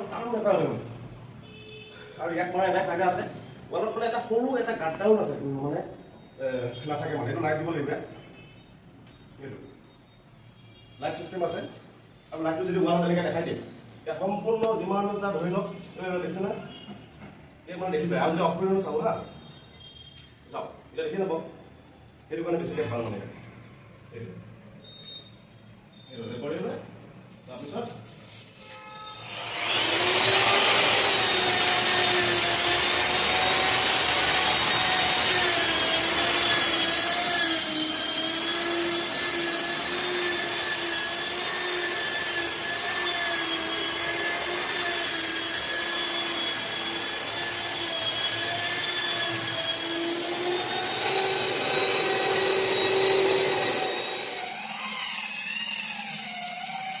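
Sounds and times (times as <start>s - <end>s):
sanding machine motor whine: 29.2s - 57.0s.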